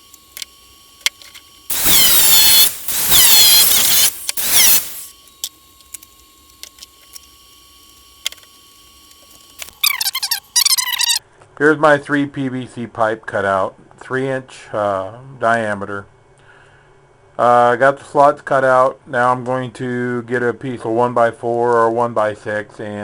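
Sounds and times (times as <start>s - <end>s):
power tool cutting plastic pipe: 0.0s - 11.2s.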